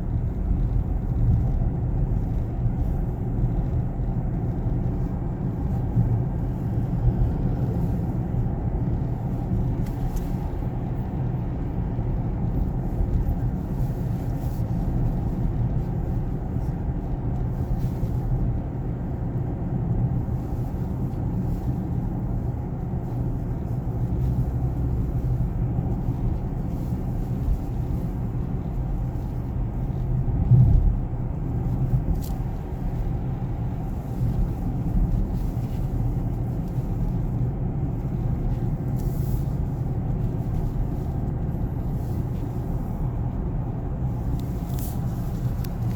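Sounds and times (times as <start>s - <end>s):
road and drivetrain rumble: 0.0s - 45.9s
low bump: 30.4s - 31.2s.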